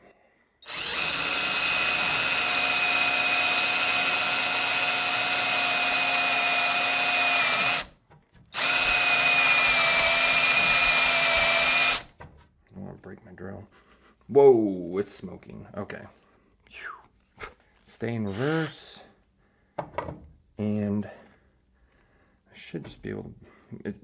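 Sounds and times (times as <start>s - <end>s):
electric drill whining: 0.6s - 7.9s, 8.5s - 12.2s, 18.3s - 18.7s.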